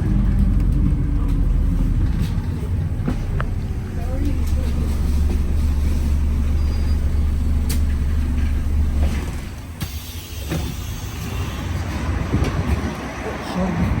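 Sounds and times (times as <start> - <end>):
bus drivetrain drone: 0.0 - 14.0.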